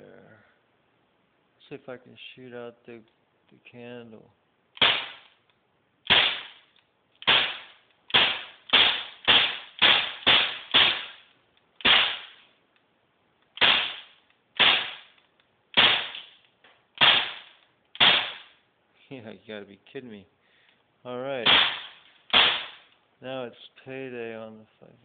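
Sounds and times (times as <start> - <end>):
air pistol shots cracking: 4.8 - 5.3, 6.1 - 12.4, 13.6 - 16.4, 17.0 - 18.6, 21.4 - 22.9.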